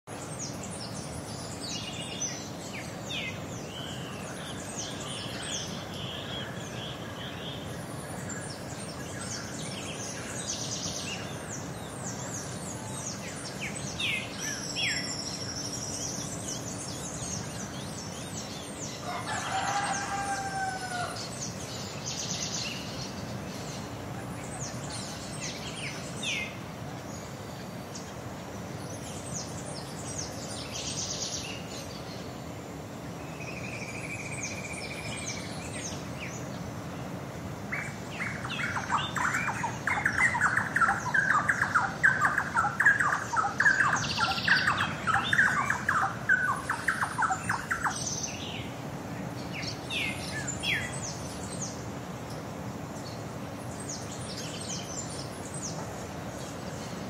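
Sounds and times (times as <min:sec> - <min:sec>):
small birds chirping: 0:00.1 - 0:57.0
rooster crowing: 0:19.0 - 0:21.3.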